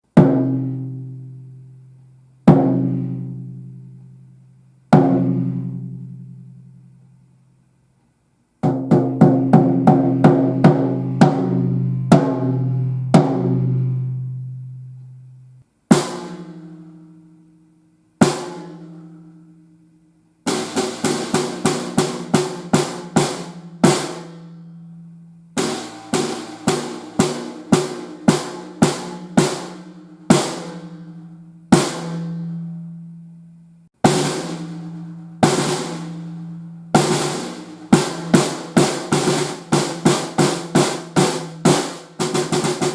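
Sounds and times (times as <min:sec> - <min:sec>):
drums being played: 0:00.0 - 0:01.3, 0:02.5 - 0:03.4, 0:04.9 - 0:05.8, 0:08.6 - 0:15.0, 0:15.9 - 0:16.7, 0:18.2 - 0:18.8, 0:20.5 - 0:24.5, 0:25.6 - 0:31.1, 0:31.7 - 0:32.5, 0:34.0 - 0:42.9.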